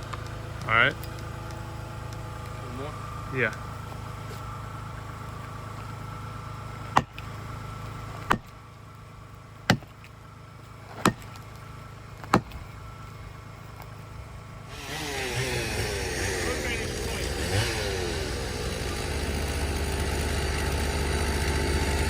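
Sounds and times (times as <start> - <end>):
low engine hum: 0.0 - 22.0
rough engine noise: 0.0 - 22.0
sharp knocks: 6.9 - 7.3, 9.7 - 10.0.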